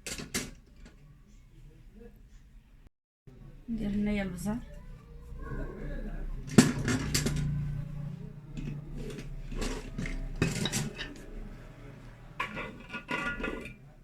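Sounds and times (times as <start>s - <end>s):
cutlery clinking against dishes: 6.5s - 7.6s, 8.6s - 11.6s, 12.4s - 13.9s.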